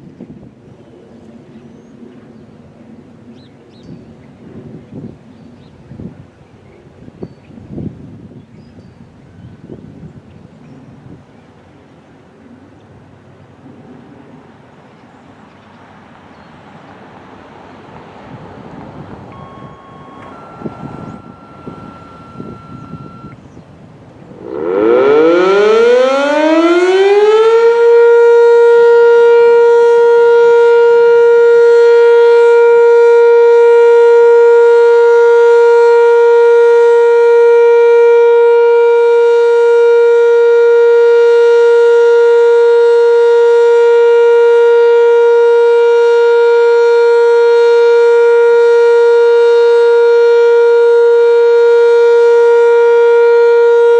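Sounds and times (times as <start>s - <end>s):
warning siren winding up: 19.0s - 23.4s, 24.3s - 53.9s.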